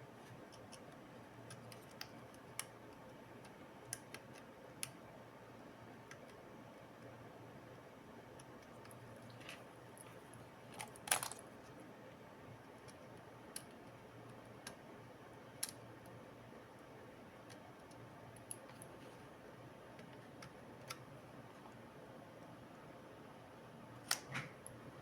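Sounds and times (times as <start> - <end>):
laptop clatter: 10.7 - 11.5.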